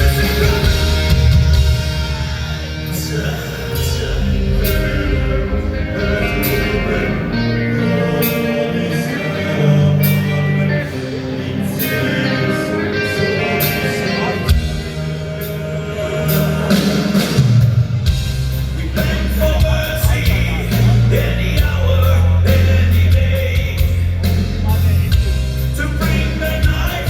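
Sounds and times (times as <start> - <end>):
person singing: 0.0 - 17.7
metal band playing ballad: 0.0 - 27.0.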